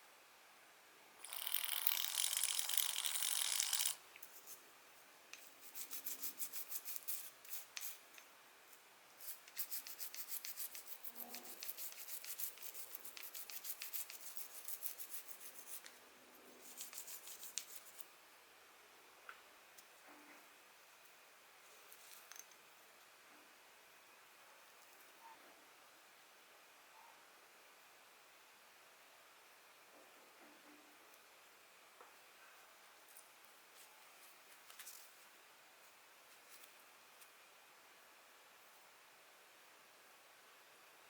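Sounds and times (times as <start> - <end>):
rubbing and scraping small parts: 1.2 - 4.6, 5.4 - 18.1, 21.7 - 22.7.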